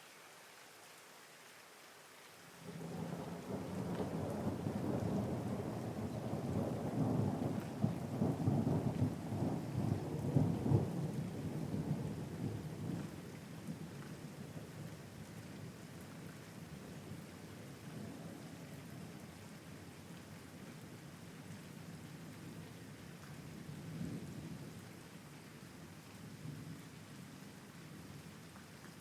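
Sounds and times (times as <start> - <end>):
steady rain: 0.0 - 29.0
rolling thunder: 2.7 - 13.1.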